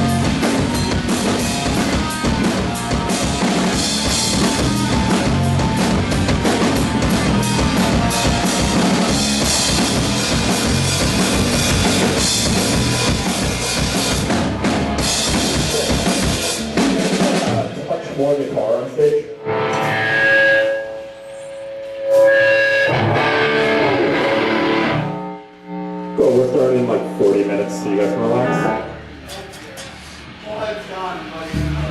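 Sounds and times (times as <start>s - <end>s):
pounding drum kit: 0.0s - 20.0s, 30.2s - 31.9s
hardcore punk band playing: 0.0s - 21.0s, 22.0s - 29.4s, 31.2s - 31.9s
distorted guitars and bass: 0.0s - 31.9s.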